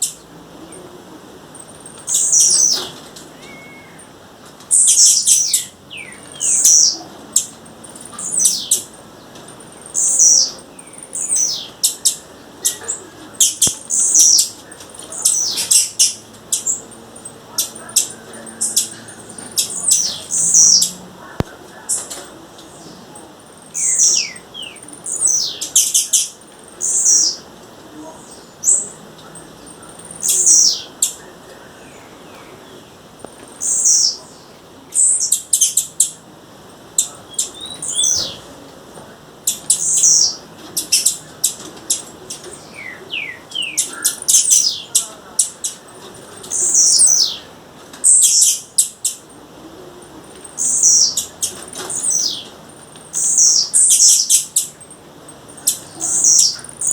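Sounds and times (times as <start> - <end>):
bird calling with downward-sliding notes: 2.1 - 4.1.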